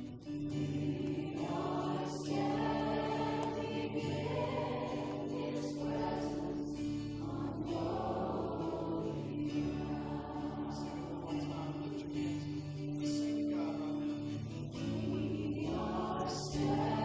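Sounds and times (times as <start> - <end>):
sustained instrumental backing: 0.0 - 13.5
voices singing together: 0.0 - 17.0.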